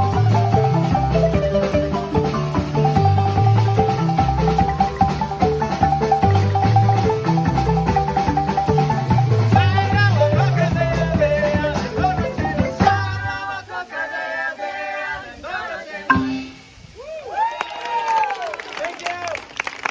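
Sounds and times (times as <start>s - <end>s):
bass marimba low line: 0.0s - 13.5s, 16.1s - 16.8s
marimba ensemble playing: 0.0s - 13.5s, 16.1s - 16.8s.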